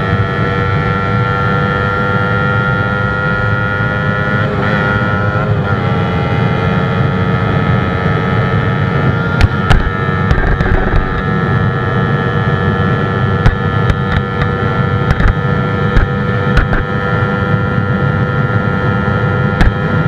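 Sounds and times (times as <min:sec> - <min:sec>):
motorcycle engine at high revs: 0:00.0 - 0:20.0
road and wind rumble: 0:00.0 - 0:20.0
sharp clicks: 0:15.1 - 0:15.4.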